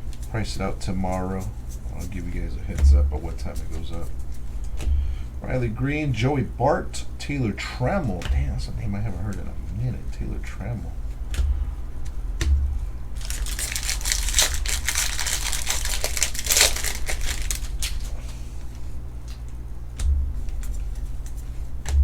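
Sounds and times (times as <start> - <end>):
dull knocks: 2.3 - 6.3, 7.6 - 18.2, 20.0 - 22.0
plastic wrapper crinkling: 13.1 - 18.4.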